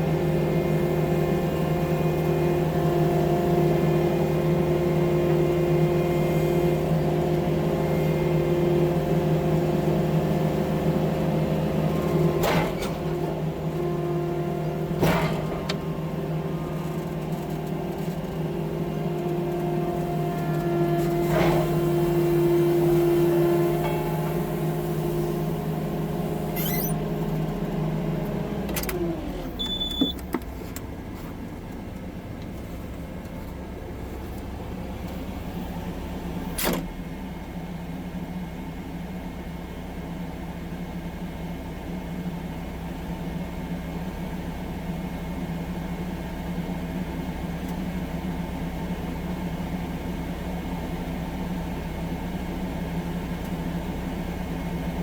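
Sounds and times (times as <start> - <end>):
engine running: 0.0 - 39.6.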